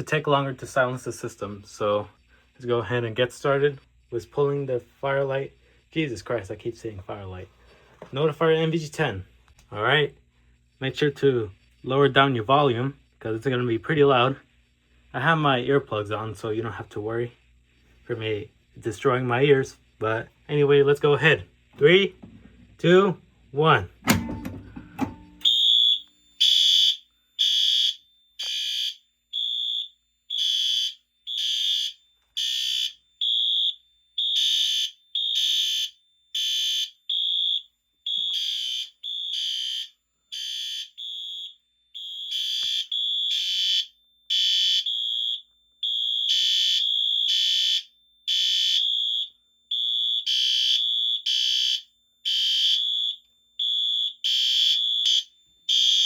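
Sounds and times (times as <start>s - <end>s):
fire alarm horns blasting: 23.7s - 56.0s.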